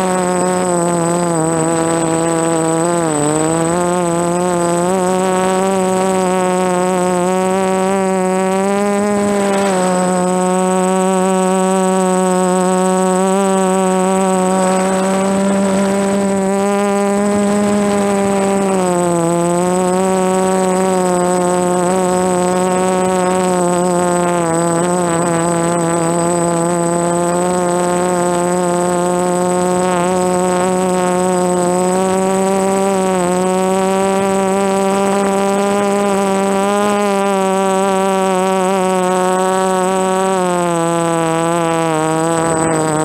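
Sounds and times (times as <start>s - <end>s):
quadcopter propellers whining: 0.0s - 43.0s
thin high tone: 6.5s - 26.7s.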